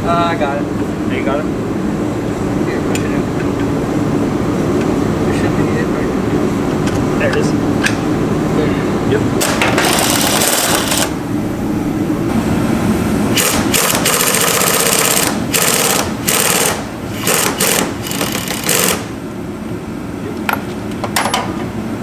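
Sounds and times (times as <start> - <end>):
power tool buzzing: 9.4 - 11.3, 13.2 - 19.1.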